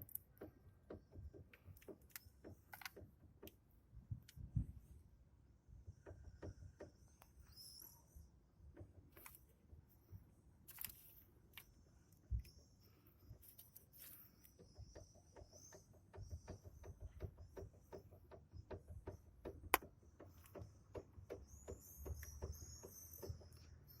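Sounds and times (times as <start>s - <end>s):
faint bird chirps: 5.8s - 8.8s, 11.7s - 24.0s
brake caliper knocking: 14.5s - 23.8s.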